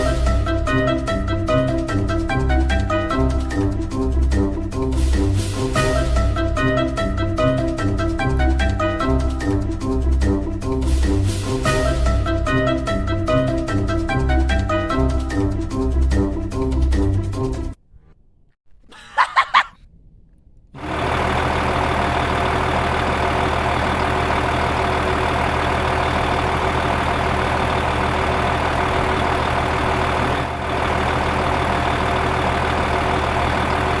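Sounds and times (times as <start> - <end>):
music: 0.0 - 17.8
engine idling: 20.7 - 34.0.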